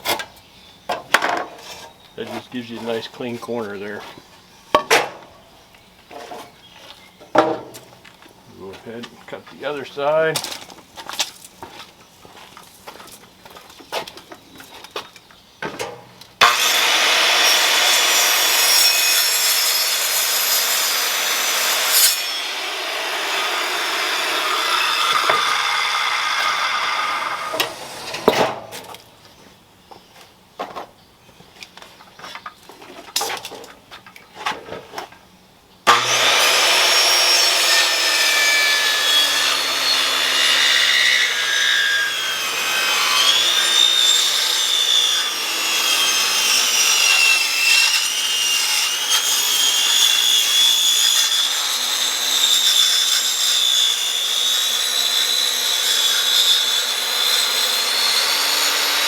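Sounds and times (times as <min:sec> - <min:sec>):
jigsaw cutting wood: 0:16.4 - 0:28.3, 0:35.9 - 0:59.0.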